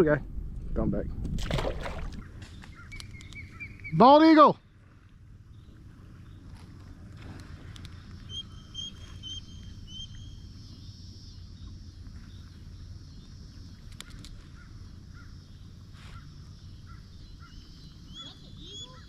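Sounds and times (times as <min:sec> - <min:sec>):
river rumble: 0:00.0 - 0:19.0
wind: 0:00.0 - 0:19.0
eagle high piping calls: 0:02.7 - 0:04.1.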